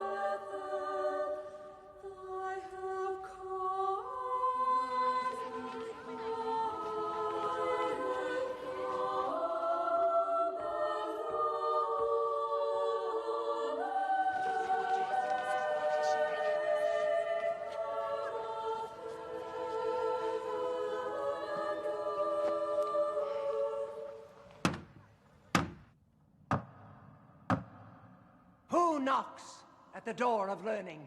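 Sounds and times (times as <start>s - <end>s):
choir singing sustained chords: 0.0s - 24.6s.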